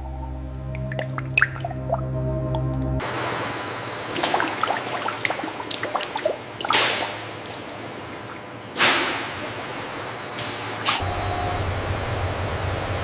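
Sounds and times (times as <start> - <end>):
liquid dripping and splashing: 0.7 - 2.9, 4.1 - 7.8.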